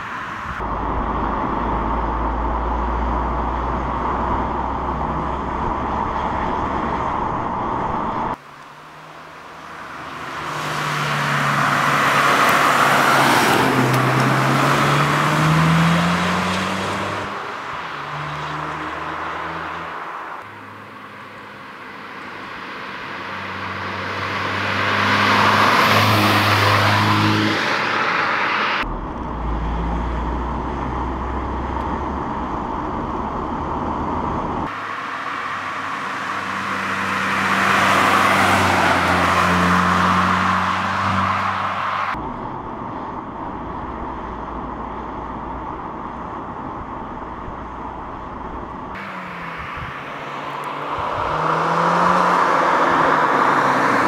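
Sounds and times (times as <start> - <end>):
car accelerating past: 9.8 - 17.4, 23.4 - 31.8, 49.0 - 54.0
low engine drone: 28.7 - 35.2.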